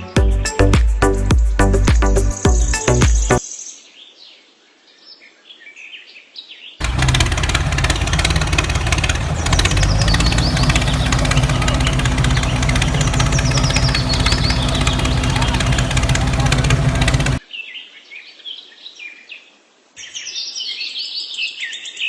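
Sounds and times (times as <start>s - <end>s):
engine running loudly: 6.8s - 17.4s
faint bird chirps: 9.5s - 22.0s.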